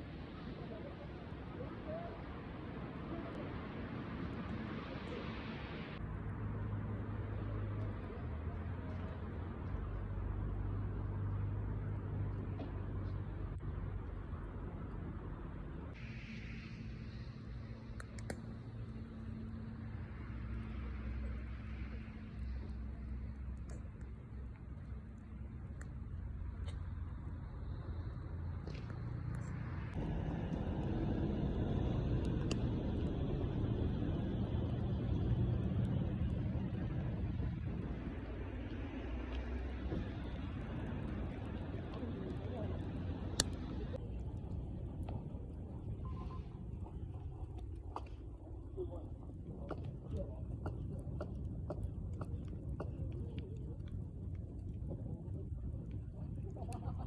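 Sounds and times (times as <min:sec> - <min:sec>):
fire crackles: 0:00.0 - 0:57.0
low rumbling noise: 0:00.0 - 0:57.0
faint clicks: 0:17.0 - 0:19.7.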